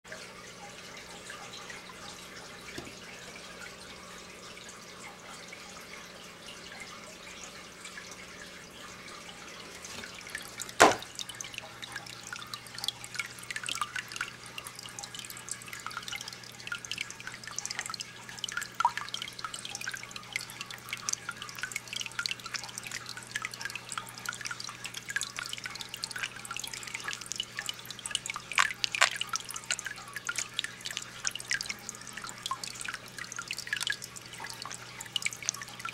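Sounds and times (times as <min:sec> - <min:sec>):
low steady hum: 0:00.1 - 0:35.9
water dripping and splashing: 0:00.1 - 0:35.9
sharp knock: 0:10.8 - 0:11.1.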